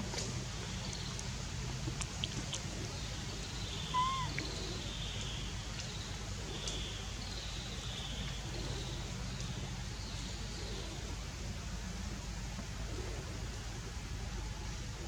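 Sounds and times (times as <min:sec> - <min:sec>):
faint high chirps: 0:03.8 - 0:04.6
whistled animal call: 0:03.8 - 0:04.8.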